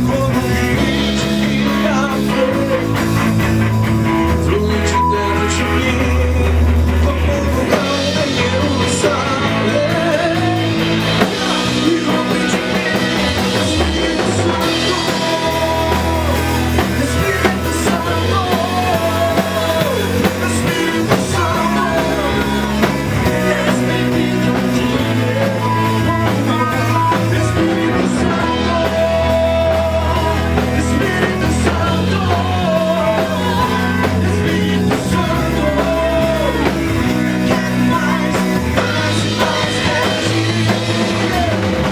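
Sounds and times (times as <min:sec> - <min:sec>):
bass line: 0:00.0 - 0:41.9
drum kit: 0:00.0 - 0:41.9
gospel band playing: 0:00.0 - 0:41.9
guitar: 0:00.0 - 0:41.9
person singing: 0:00.0 - 0:41.9.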